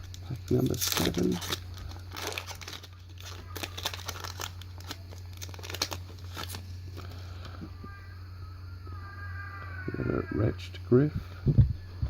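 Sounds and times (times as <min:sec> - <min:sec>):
plastic wrapper crinkling and tearing: 0:00.0 - 0:07.2.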